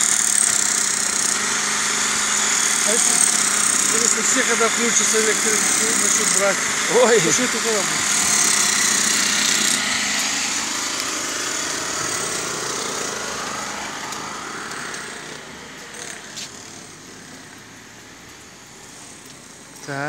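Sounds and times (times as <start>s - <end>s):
excavator engine running: 0.0s - 20.0s.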